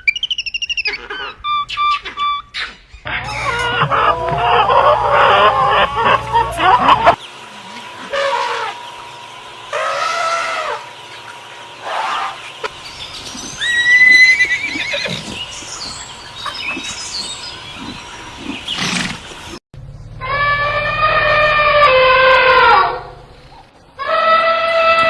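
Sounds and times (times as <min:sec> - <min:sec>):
horse neighing: 0:13.6 - 0:15.4.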